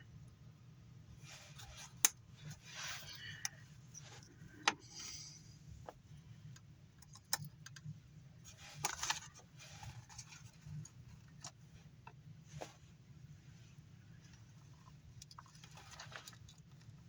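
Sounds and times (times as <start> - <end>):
faint low hum: 0.0 - 17.0
small parts clicking and tapping: 6.5 - 7.9.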